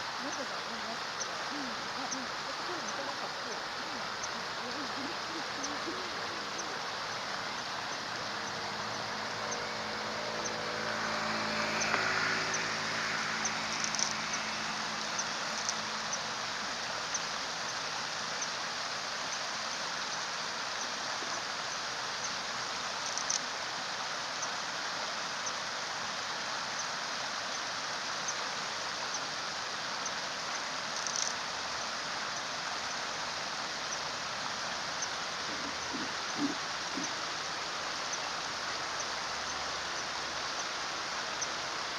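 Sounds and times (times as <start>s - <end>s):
water flowing: 0.0s - 41.9s
vehicle engine passing: 6.3s - 16.7s.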